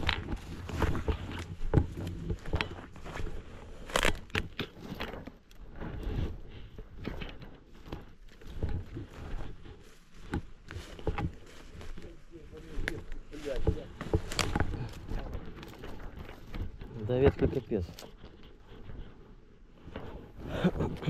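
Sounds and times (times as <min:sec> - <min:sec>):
twigs snapping: 0:00.0 - 0:05.7, 0:12.6 - 0:18.5
footsteps crunching through leaves: 0:07.7 - 0:18.2.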